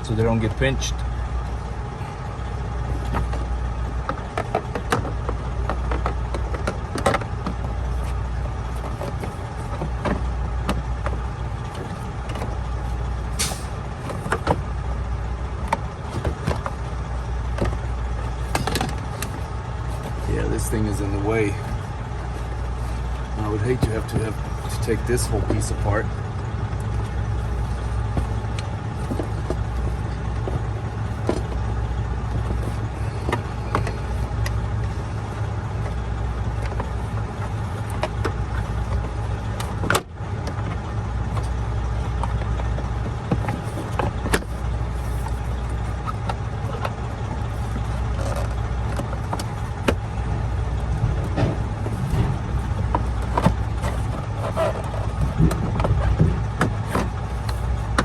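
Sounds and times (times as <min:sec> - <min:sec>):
truck engine idling: 0:00.0 - 0:58.0.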